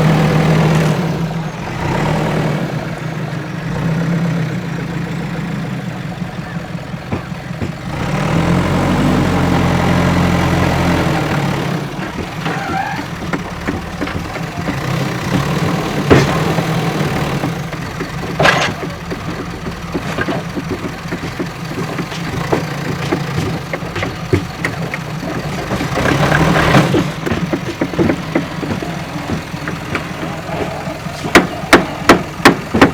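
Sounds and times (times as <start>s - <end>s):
diesel engine revving: 0.0s - 32.9s
sharp knocks: 12.0s - 32.9s.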